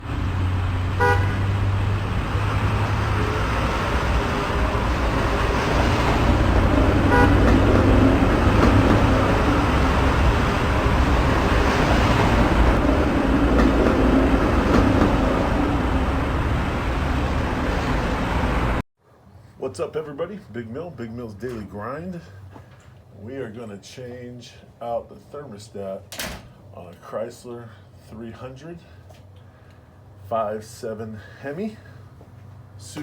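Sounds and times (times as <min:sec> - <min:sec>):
road traffic noise: 0:00.0 - 0:18.8, 0:28.9 - 0:30.3, 0:31.2 - 0:33.0
car horn toots: 0:01.0 - 0:01.6, 0:07.0 - 0:07.7.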